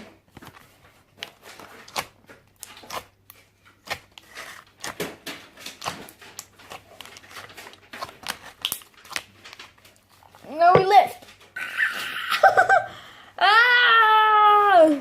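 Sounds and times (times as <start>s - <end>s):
slime squelching: 0.0s - 11.5s.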